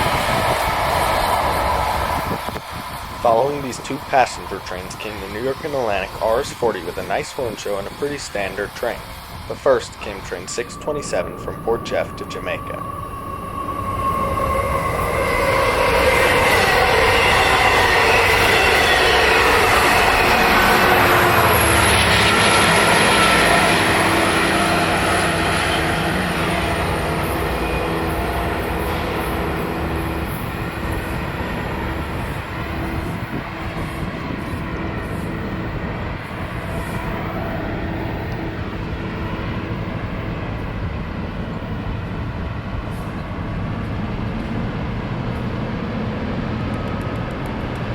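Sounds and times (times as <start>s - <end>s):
passenger train passing: 0.0s - 47.9s
thin high whine: 2.5s - 38.8s.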